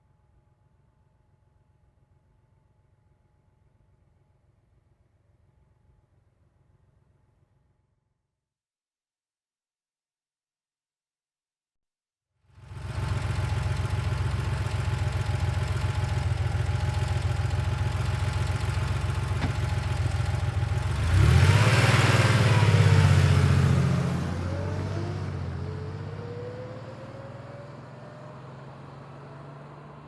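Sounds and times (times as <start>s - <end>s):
car engine running: 12.6s - 25.9s.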